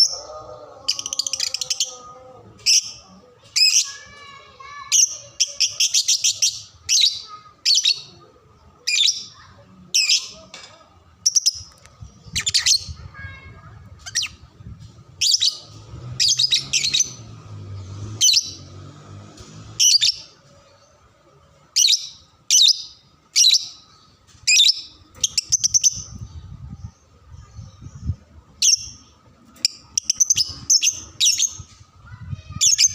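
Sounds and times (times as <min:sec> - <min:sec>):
lovebird chirping: 0:27.9 - 0:31.7.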